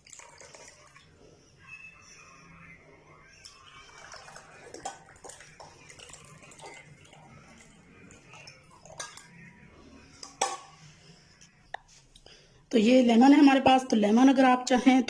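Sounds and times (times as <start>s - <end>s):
dishes and utensils clinking: 8.3s - 9.4s, 10.2s - 10.8s.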